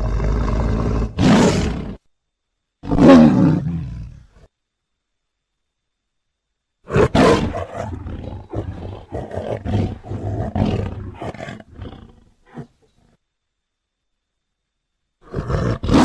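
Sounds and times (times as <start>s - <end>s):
big cat roar: 0.0s - 2.0s, 2.8s - 4.4s, 6.9s - 12.8s, 15.2s - 16.0s.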